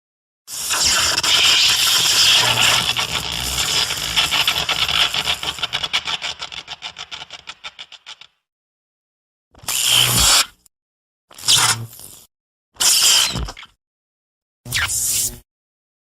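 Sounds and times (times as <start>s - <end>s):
monster hissing crackle: 0.5s - 6.2s.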